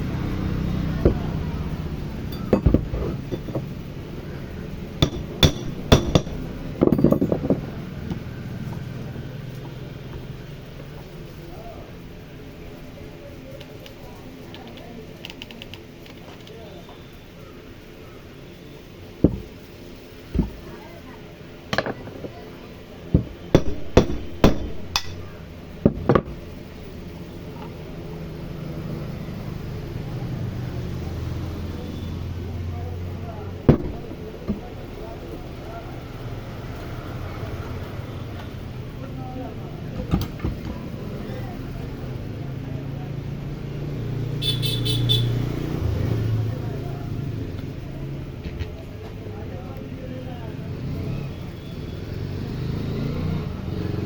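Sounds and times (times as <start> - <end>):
metal tools knocking and clinking: 2.2 - 3.8, 5.0 - 8.8, 19.2 - 19.5, 21.7 - 22.4, 23.2 - 26.4.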